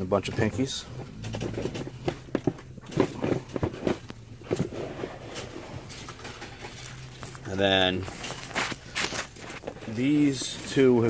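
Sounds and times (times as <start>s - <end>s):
plastic tubs clicking and knocking: 0.4s - 11.0s.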